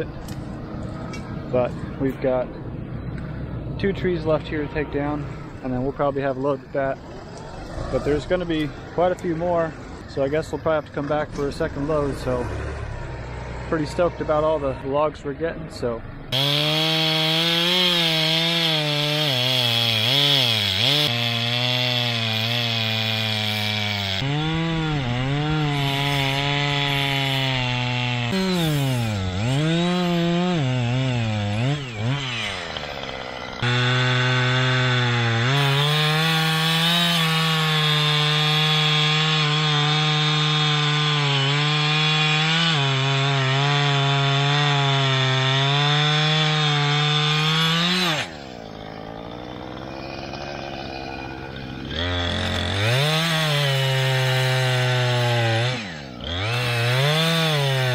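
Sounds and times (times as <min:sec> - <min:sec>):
chainsaw cutting wood: 0:16.3 - 0:57.9.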